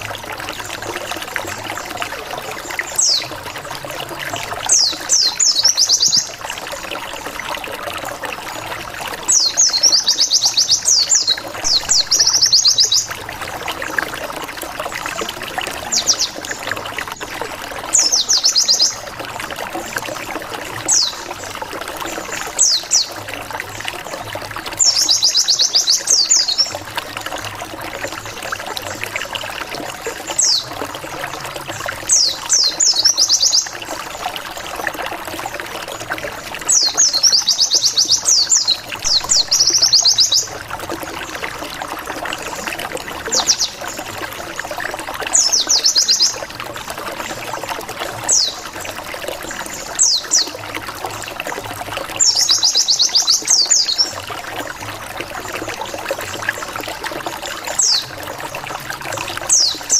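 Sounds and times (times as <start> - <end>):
trickling water hiss: 0.0 - 59.9.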